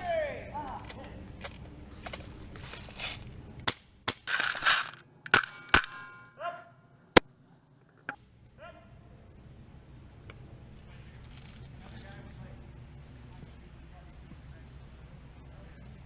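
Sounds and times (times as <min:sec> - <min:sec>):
airsoft gun snaps: 0:03.6 - 0:06.3.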